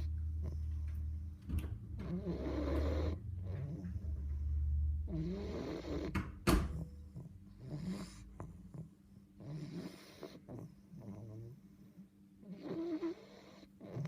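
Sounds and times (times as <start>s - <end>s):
puppy snoring: 0.0s - 14.0s.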